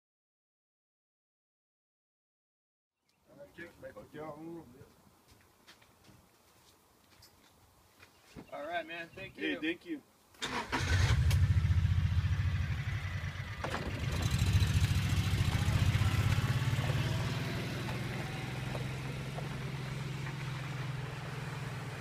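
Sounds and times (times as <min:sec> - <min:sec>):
vehicle engine pulsing rumble: 0:11.0 - 0:22.0.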